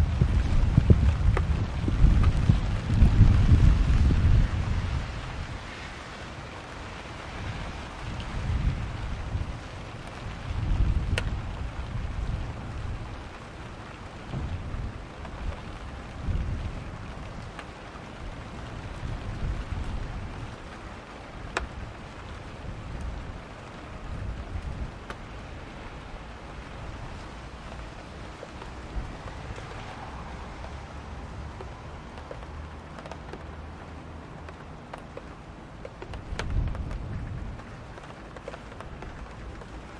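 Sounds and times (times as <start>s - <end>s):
low rolling thunder: 0.0s - 5.4s, 14.2s - 17.2s
steady rain falling: 0.0s - 39.9s.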